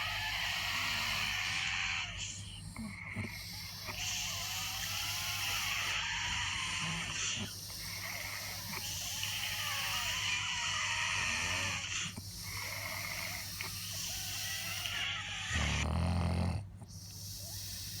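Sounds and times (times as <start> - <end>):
rasping breaths with whistle: 0.0 - 18.0
loud low snore: 15.4 - 16.7.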